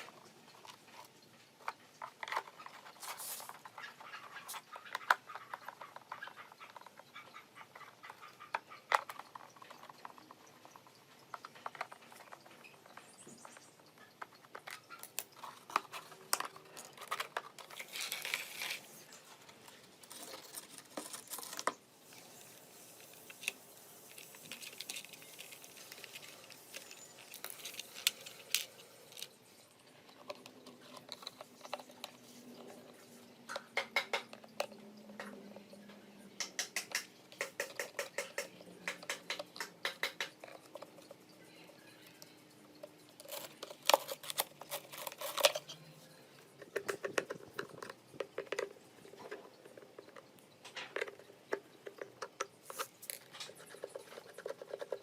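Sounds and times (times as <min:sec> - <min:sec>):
small hard parts and tools clicking: 0:00.0 - 0:55.0.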